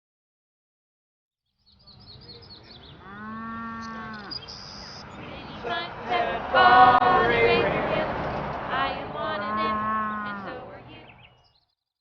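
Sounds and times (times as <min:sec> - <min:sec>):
cattle mooing: 0:03.0 - 0:04.4, 0:09.4 - 0:10.6.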